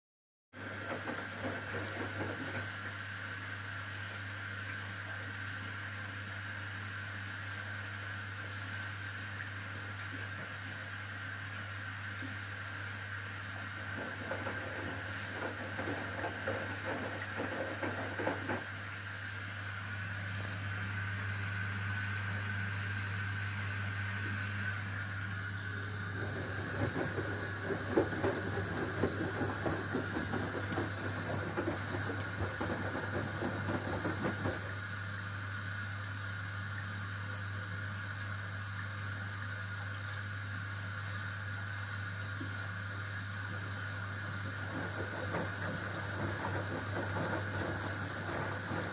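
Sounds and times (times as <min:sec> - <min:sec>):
washing machine hum: 0:00.5 - 0:48.9
water sloshing in drum: 0:00.6 - 0:03.0, 0:13.2 - 0:19.1, 0:25.0 - 0:34.9, 0:43.5 - 0:48.9
water hissing: 0:01.4 - 0:48.9.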